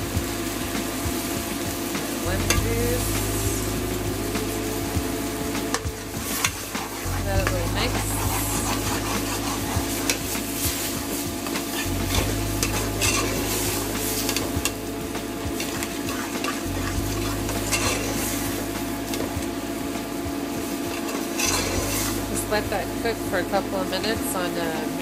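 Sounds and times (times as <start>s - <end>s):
sauce sizzling in a pan: 0.1s - 24.5s
spoon scraping a pan: 5.7s - 14.8s, 15.6s - 19.3s, 20.9s - 22.2s.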